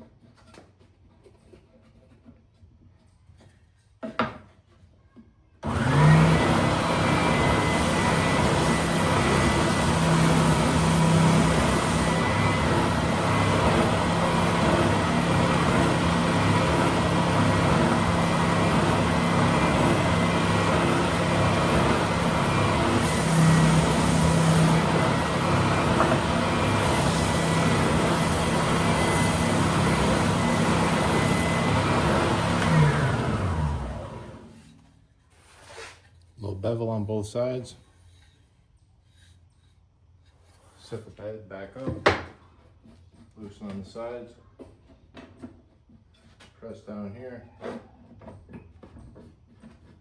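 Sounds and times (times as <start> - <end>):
sander motor winding down: 5.6 - 34.7
belt sander humming: 5.6 - 34.9.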